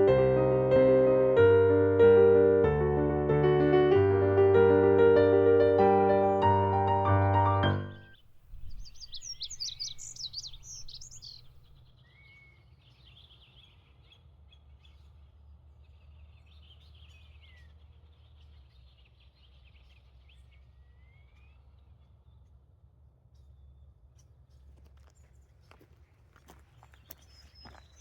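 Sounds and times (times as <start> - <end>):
songbirds singing: 7.8 - 11.8, 26.7 - 28.0.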